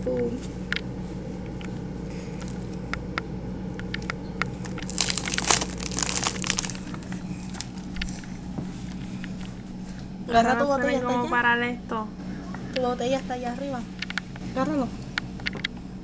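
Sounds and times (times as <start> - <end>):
steady low hum: 0.0 - 16.0
food packaging crinkling: 4.5 - 9.0.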